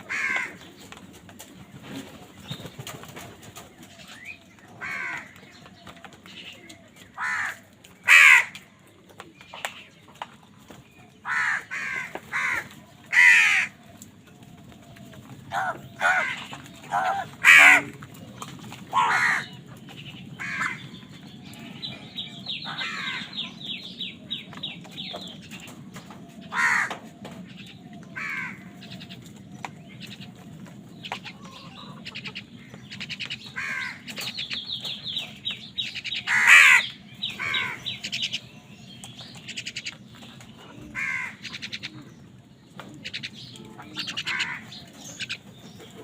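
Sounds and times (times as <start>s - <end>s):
crows cawing: 0.0s - 0.6s, 4.8s - 5.4s, 7.2s - 8.6s, 11.2s - 13.8s, 15.5s - 18.0s, 18.9s - 19.6s, 20.4s - 20.9s, 22.6s - 23.6s, 26.5s - 27.0s, 28.2s - 28.8s, 33.6s - 34.1s, 36.2s - 38.2s, 40.9s - 41.9s, 43.9s - 44.9s.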